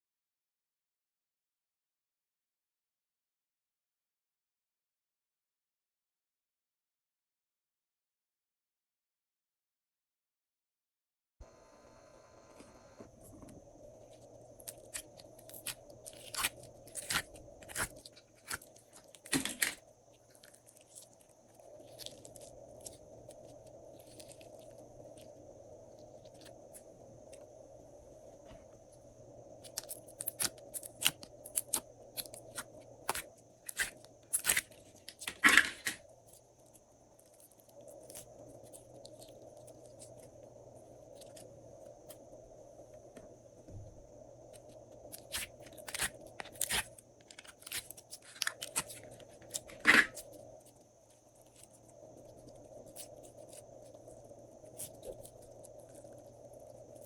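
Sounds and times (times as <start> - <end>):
faint steady hum: 11.4 - 57.0
slime crackling and clicking: 29.6 - 36.0.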